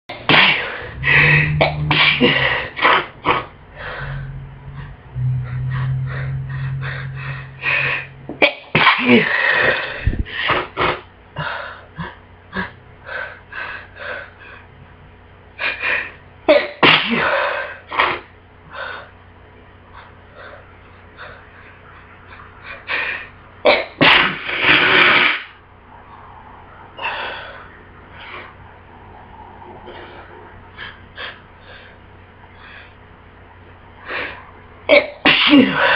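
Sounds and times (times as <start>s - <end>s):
person sneezing: 0.2s - 3.5s, 8.4s - 11.1s, 16.5s - 18.2s, 23.7s - 25.5s, 34.9s - 35.9s.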